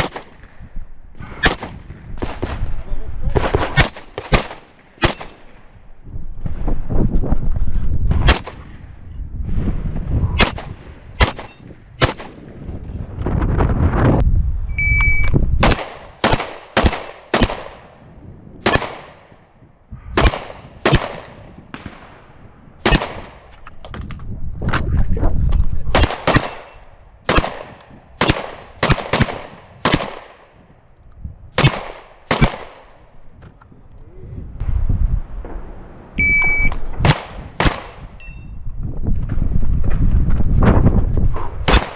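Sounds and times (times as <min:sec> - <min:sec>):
shotgun shots: 0:00.0 - 0:00.6, 0:01.4 - 0:02.7, 0:03.4 - 0:05.7, 0:08.1 - 0:08.8, 0:10.4 - 0:12.6, 0:15.6 - 0:18.0, 0:18.6 - 0:19.4, 0:20.2 - 0:23.5, 0:25.9 - 0:30.6, 0:31.5 - 0:33.1, 0:37.0 - 0:38.2, 0:41.6 - 0:41.9.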